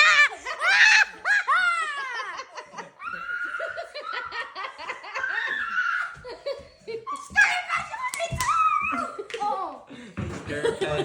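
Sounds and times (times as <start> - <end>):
people laughing hard: 0.0 - 7.8, 10.0 - 11.0.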